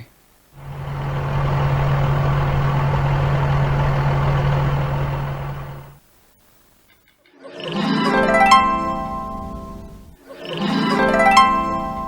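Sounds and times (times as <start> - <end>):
bulldozer diesel engine running: 0.6 - 6.0.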